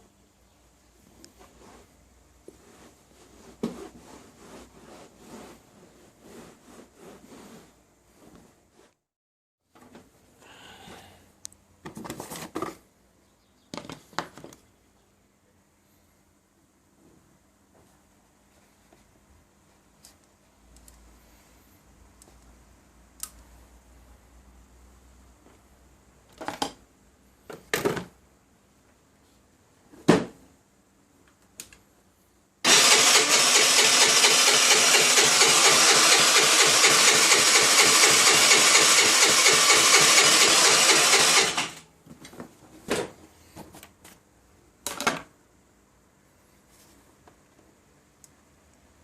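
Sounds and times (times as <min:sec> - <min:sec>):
scooter starter cranking engine: 0:32.7 - 0:41.8.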